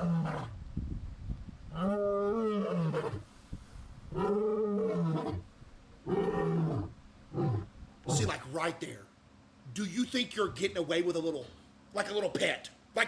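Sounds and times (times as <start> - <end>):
big cat roaring: 0.0 - 0.6, 1.7 - 3.3, 4.1 - 8.5.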